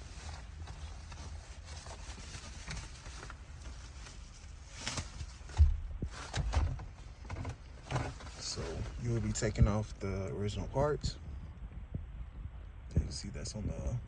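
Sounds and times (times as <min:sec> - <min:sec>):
rustling: 0:00.0 - 0:09.9.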